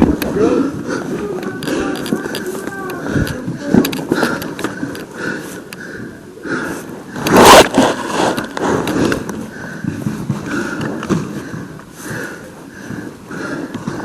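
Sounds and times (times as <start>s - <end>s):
breathing close to microphone: 0.0s - 14.0s
rustling movement: 0.0s - 14.0s.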